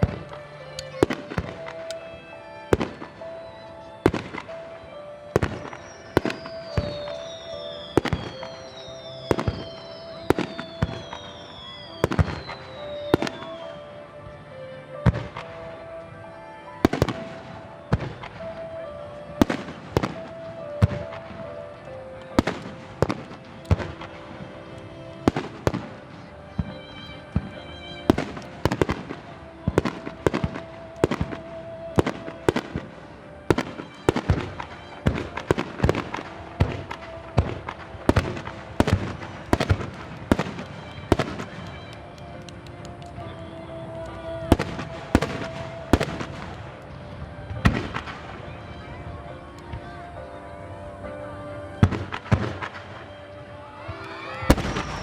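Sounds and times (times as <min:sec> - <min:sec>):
music: 0:00.0 - 0:55.0
falling firework whistles: 0:05.3 - 0:14.0, 0:51.8 - 0:55.0.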